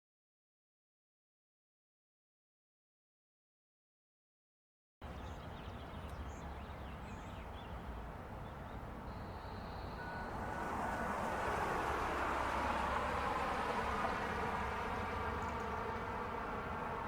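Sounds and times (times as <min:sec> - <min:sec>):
faint bird chirps: 0:08.4 - 0:10.4
storm siren: 0:09.9 - 0:17.0.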